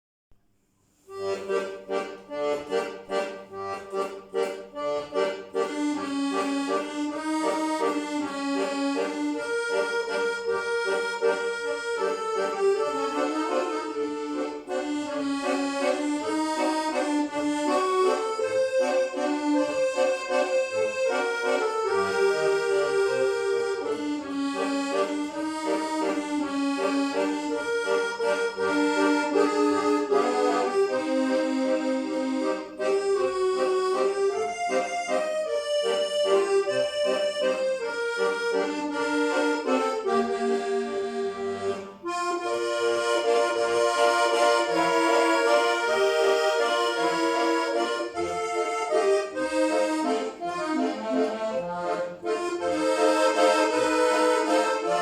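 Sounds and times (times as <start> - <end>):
solo accordion melody: 0.4 - 55.0.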